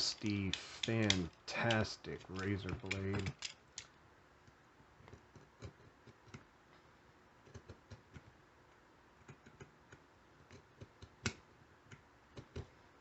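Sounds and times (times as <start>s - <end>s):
razor blade tapping wooden stick: 0.2s - 3.9s.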